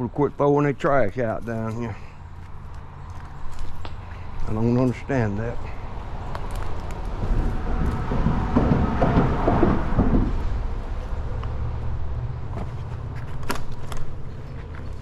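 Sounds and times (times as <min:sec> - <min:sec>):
rustling and crunching: 0:01.0 - 0:05.1, 0:05.7 - 0:08.1, 0:12.5 - 0:15.0
wind rumbling on microphone: 0:06.1 - 0:13.2.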